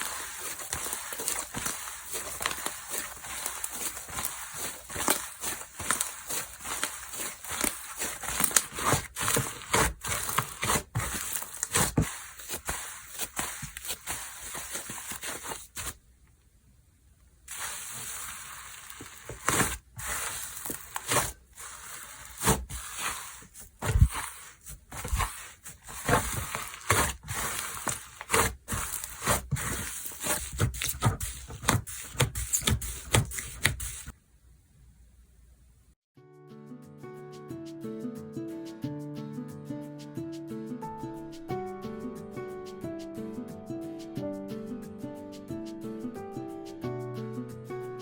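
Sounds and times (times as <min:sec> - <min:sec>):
hands squishing slime: 0:00.0 - 0:16.0, 0:17.5 - 0:34.2.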